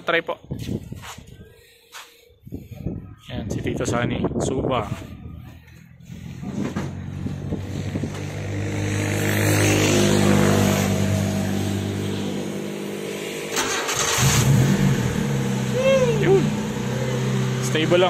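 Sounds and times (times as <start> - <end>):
car engine cranking and running: 10.1 - 18.0.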